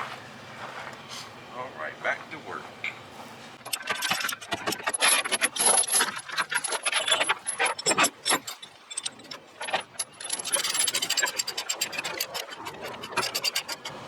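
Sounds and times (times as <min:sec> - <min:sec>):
steel chains clinking and rattling: 0:03.6 - 0:14.0.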